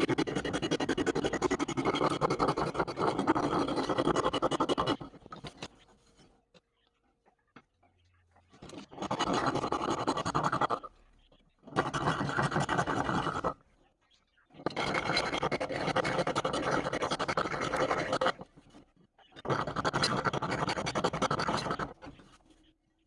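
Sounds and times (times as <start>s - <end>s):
abrasive scratching strokes: 0.0s - 6.3s, 8.5s - 10.9s, 11.6s - 13.6s, 14.6s - 18.7s.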